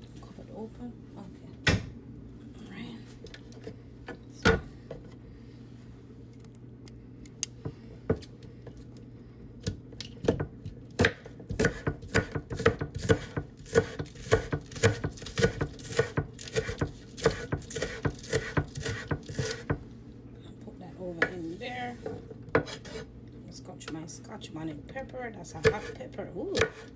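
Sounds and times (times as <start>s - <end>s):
knife chopping on cutting board: 9.6s - 19.8s, 22.5s - 23.1s, 25.6s - 26.0s, 26.6s - 26.9s.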